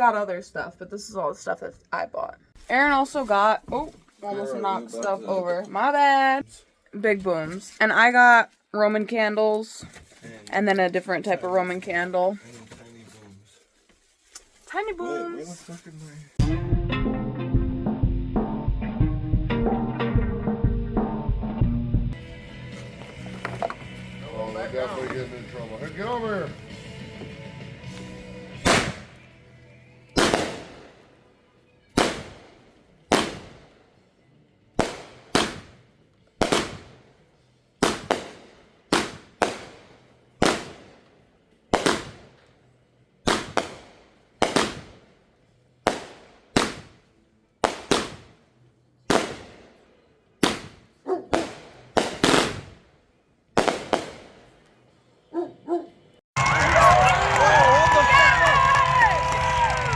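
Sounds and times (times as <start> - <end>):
fireworks bangs echoing: 28.6 - 29.2, 30.2 - 31.1, 32.0 - 33.8, 34.8 - 37.1, 37.8 - 41.1, 41.7 - 42.4, 43.3 - 45.2, 45.9 - 47.0, 47.6 - 48.4, 49.1 - 49.8, 50.4 - 52.9, 53.6 - 54.7.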